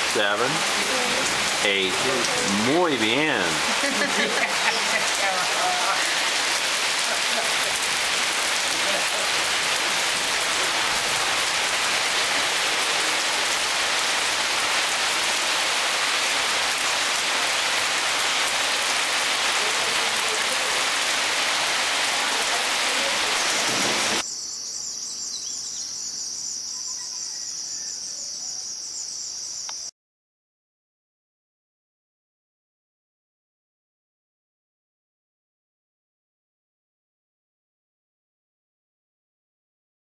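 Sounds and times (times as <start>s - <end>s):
heavy rain pouring: 0.0s - 24.2s
crickets trilling: 24.2s - 29.9s.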